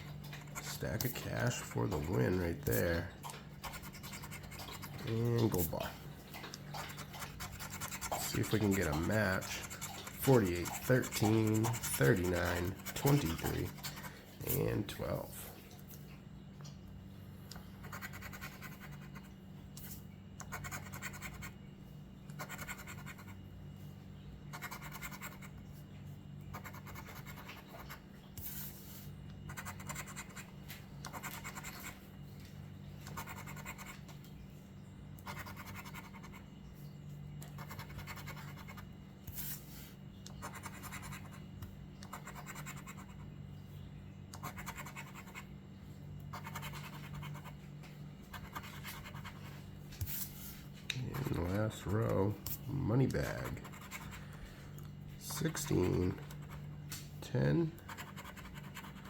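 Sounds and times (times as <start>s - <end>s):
steady low hum: 0.0s - 59.0s
scratch-off ticket being scraped: 6.9s - 14.7s.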